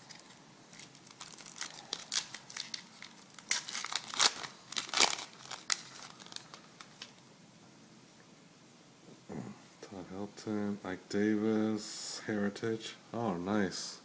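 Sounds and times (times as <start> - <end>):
foil wrapper crinkling: 0.0 - 7.2.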